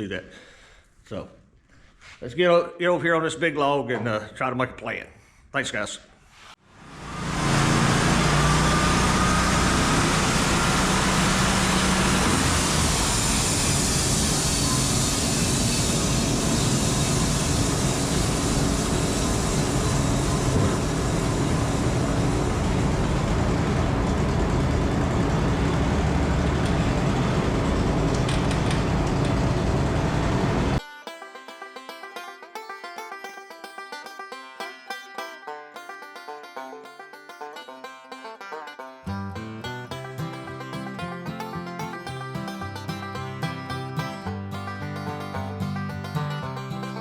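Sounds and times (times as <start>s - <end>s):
heavy machinery engine running: 6.8s - 30.8s, 39.7s - 47.0s.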